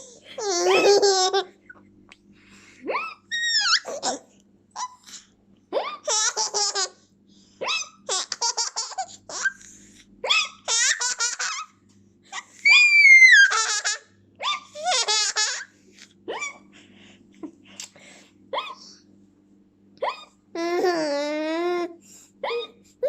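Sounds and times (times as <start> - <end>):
baby laughing: 0.0 - 1.6, 2.9 - 7.0, 7.6 - 11.7, 12.3 - 15.7, 20.0 - 21.9.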